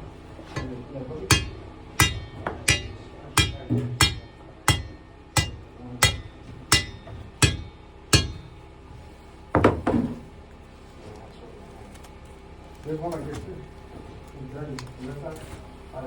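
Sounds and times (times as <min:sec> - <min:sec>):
hammer striking steel: 0:00.5 - 0:08.6.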